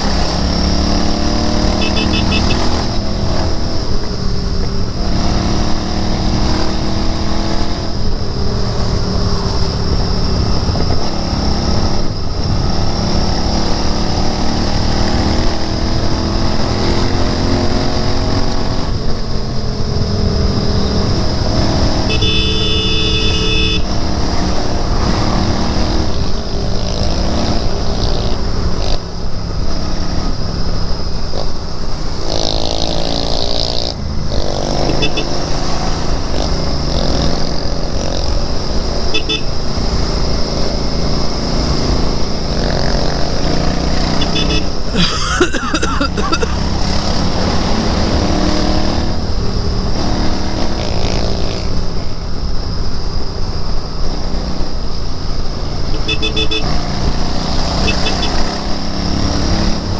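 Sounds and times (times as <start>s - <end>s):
motorcycle engine accelerating: 0.0s - 45.3s, 46.0s - 52.1s, 55.5s - 59.9s
horn honking: 1.6s - 3.0s, 21.9s - 24.0s, 34.8s - 35.6s, 39.0s - 39.6s, 44.1s - 44.9s, 55.9s - 56.8s, 57.8s - 58.6s.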